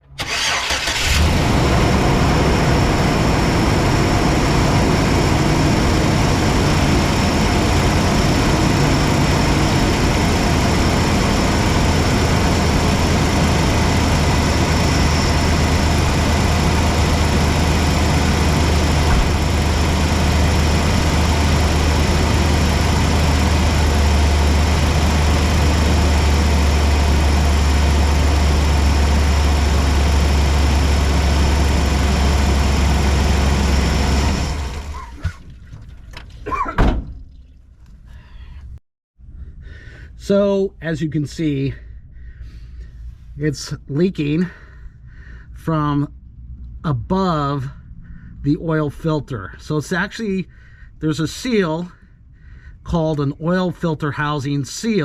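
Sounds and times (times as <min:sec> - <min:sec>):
van engine idling: 0:00.2 - 0:35.2.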